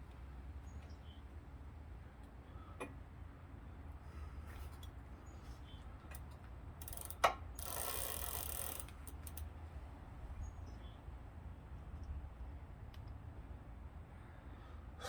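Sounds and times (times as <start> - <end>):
ratchet clicking rapidly: 6.8 - 9.5.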